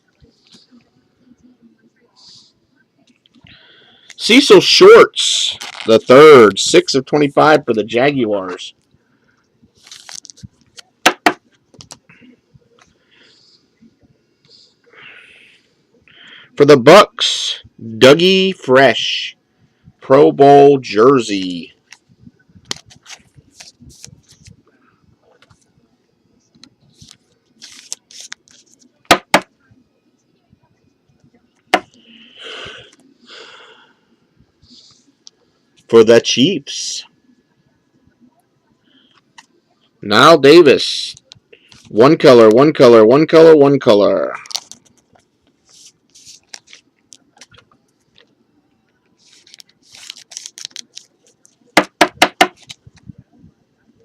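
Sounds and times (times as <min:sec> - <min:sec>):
cards rustling and sliding: 0:22.7 - 0:24.6, 0:26.6 - 0:28.9, 0:45.6 - 0:47.6, 0:49.2 - 0:51.7.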